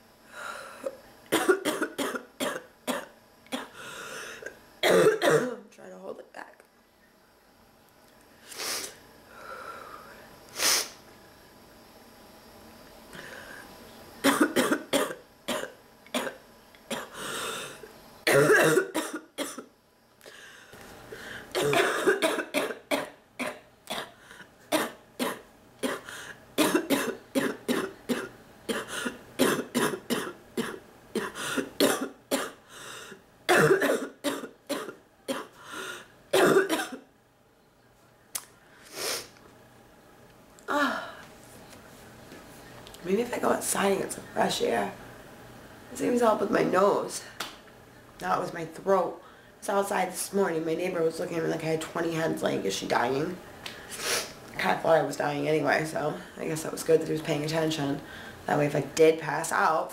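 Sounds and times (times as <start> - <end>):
woman coughing: 1.3 - 3.7, 4.8 - 5.6, 14.2 - 17.2, 18.3 - 19.7, 21.6 - 32.6, 33.5 - 35.6, 36.4 - 37.1.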